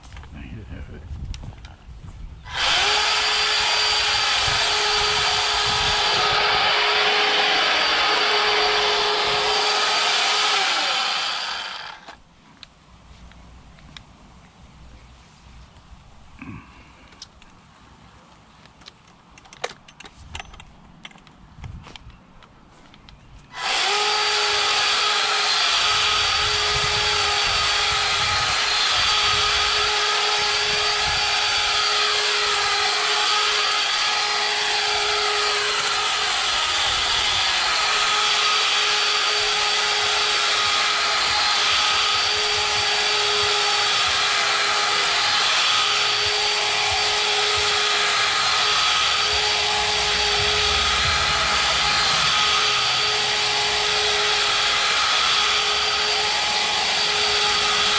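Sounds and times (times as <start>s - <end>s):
string trimmer whining: 2.5s - 12.2s, 23.5s - 57.9s.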